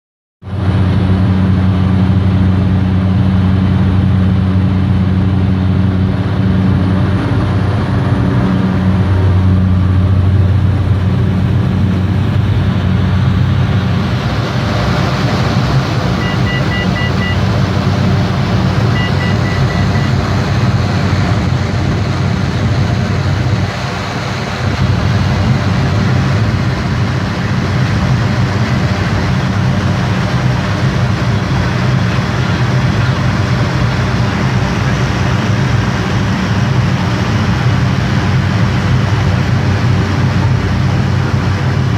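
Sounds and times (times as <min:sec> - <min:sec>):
turboprop engine droning: 0:00.4 - 0:41.9
rapid high beeps: 0:16.2 - 0:20.2.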